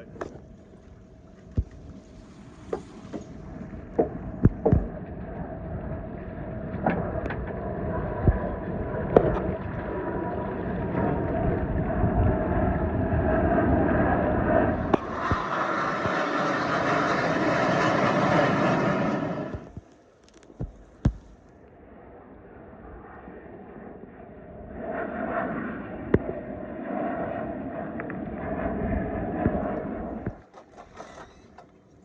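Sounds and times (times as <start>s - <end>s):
jet roar overhead: 0.0s - 20.1s, 20.7s - 31.8s
sharp knocks: 4.0s - 4.9s.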